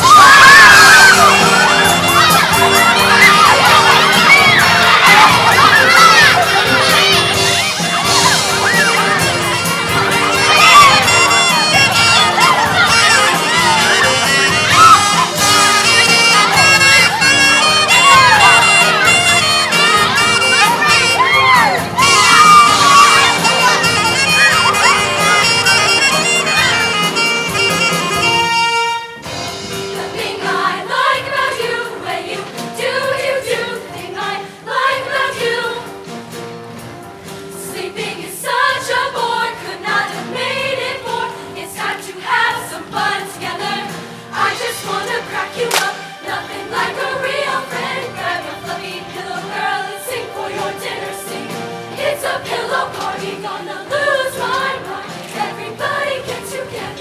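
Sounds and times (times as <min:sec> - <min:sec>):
choir singing: 0:00.0 - 0:36.4, 0:37.2 - 0:57.0
band accompaniment: 0:00.0 - 0:57.0
loud held chord: 0:01.0 - 0:29.6.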